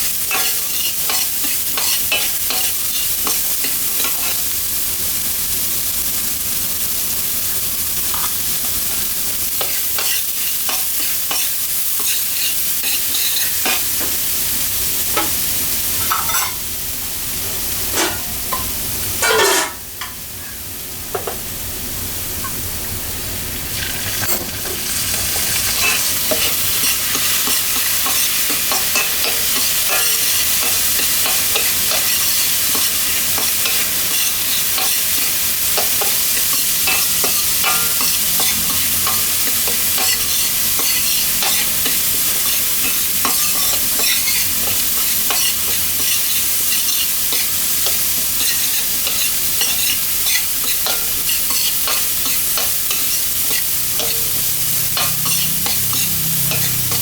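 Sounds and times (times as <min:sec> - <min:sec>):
food sizzling in a hot pan: 0:00.0 - 0:57.0
spatula scraping a pan: 0:09.6 - 0:13.9, 0:19.2 - 0:19.8, 0:23.8 - 0:57.0.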